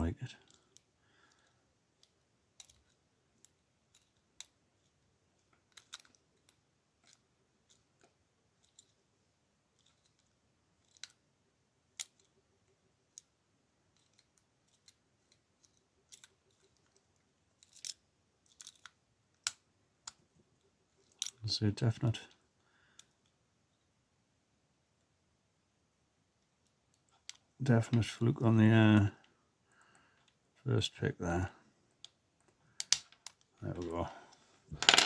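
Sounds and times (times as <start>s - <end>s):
lock pick clicking in padlock: 32.8s - 33.4s.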